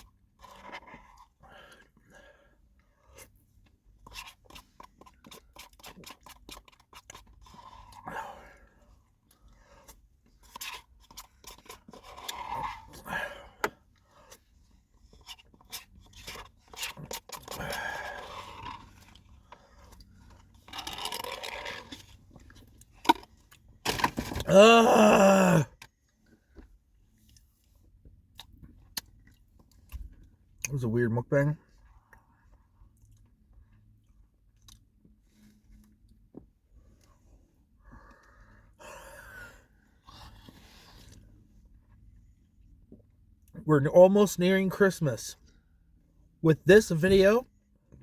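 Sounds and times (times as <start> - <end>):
eating and handling noises: 0.0 - 30.8.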